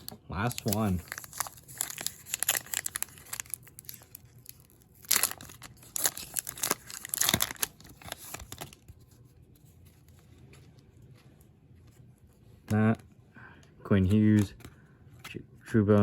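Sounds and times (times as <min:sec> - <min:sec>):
foil wrapper tearing and crinkling: 0:00.4 - 0:08.9.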